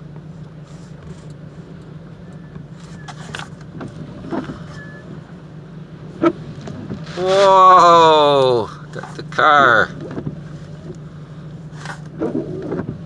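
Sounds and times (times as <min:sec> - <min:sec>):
car cabin hum: 0:00.0 - 0:13.0.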